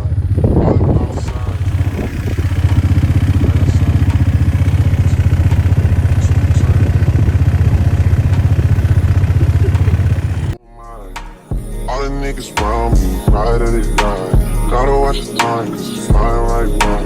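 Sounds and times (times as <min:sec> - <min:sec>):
quad bike engine running: 0:00.0 - 0:10.6.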